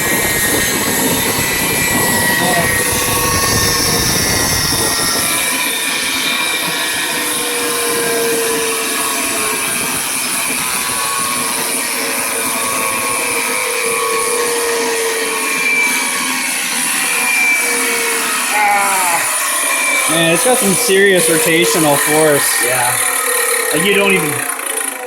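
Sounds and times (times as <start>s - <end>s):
starter motor whining hum: 0.0s - 25.0s.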